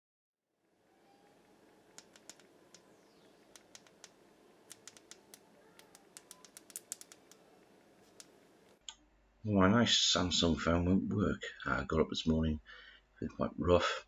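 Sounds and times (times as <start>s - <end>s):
faint room hiss: 0.5s - 14.0s
phone button clicks: 1.9s - 7.4s.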